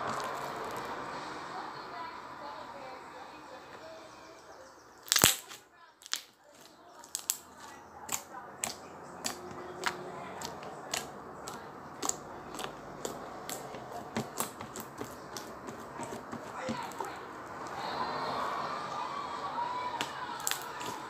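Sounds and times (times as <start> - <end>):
slime squishing with clicks and pops: 5.0 - 17.1, 20.0 - 21.0.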